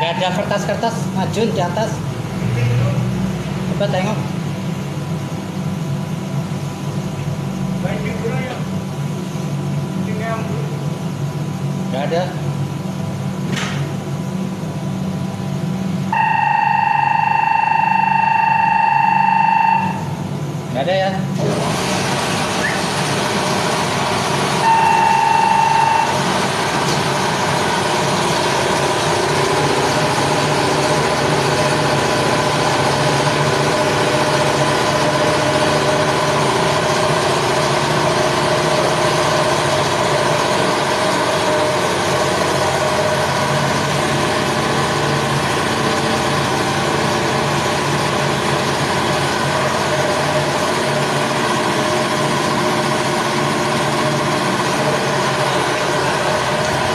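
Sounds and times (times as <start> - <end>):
engine running: 0.0 - 56.9
loud steady beep: 16.1 - 20.3, 24.6 - 26.4.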